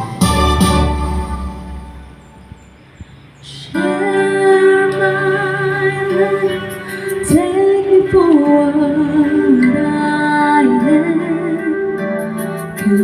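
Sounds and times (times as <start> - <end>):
keyboard backing: 0.0 - 13.0
woman singing with vibrato: 3.4 - 13.0.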